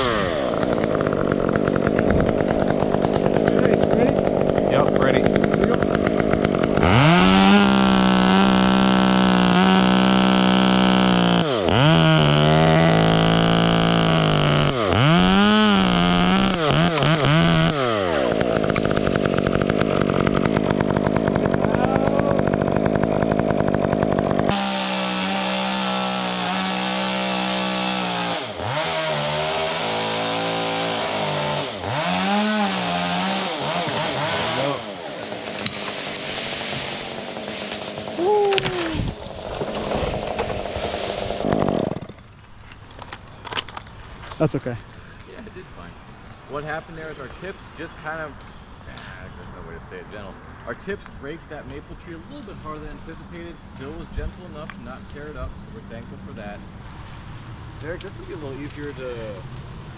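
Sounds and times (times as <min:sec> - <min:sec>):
chainsaw cutting wood: 0:00.0 - 0:44.3, 0:52.0 - 0:56.6, 0:57.8 - 0:59.9.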